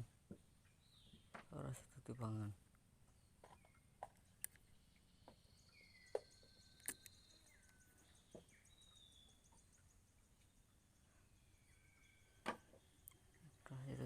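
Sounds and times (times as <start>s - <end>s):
sharp clicks: 6.8s - 7.2s.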